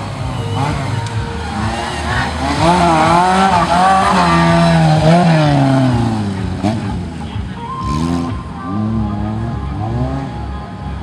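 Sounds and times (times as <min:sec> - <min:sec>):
engine revving hard: 0:00.0 - 0:10.4.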